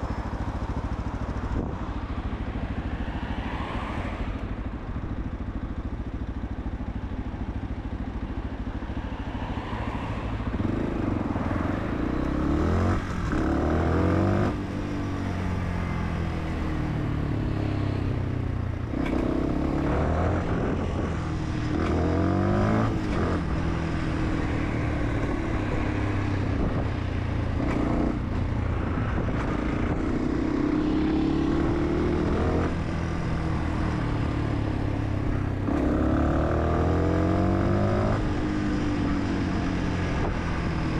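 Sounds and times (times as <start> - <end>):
wind and road noise: 0.0 - 40.9
motorcycle engine revving: 10.3 - 40.9.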